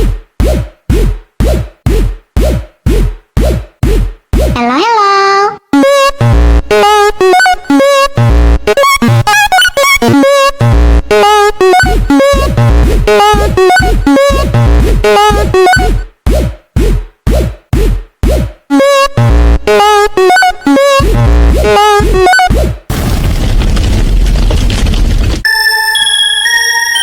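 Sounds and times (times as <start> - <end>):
distorted electronic remix: 5.8 - 16.5, 18.3 - 22.7
deep bass hits: 22.9 - 25.4.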